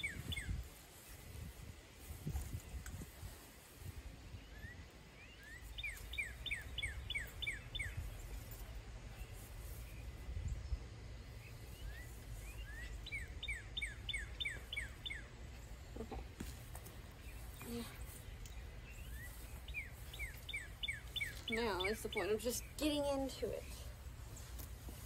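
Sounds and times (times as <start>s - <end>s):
steady low rumble: 0.0s - 21.6s
songbird singing: 0.0s - 25.0s.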